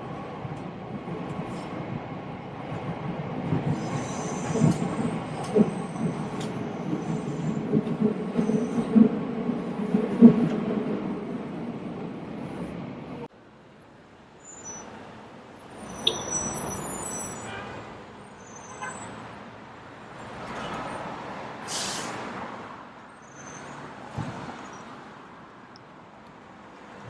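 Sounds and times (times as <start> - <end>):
road vehicles passing: 0.0 - 27.0
short hiss: 21.7 - 22.2.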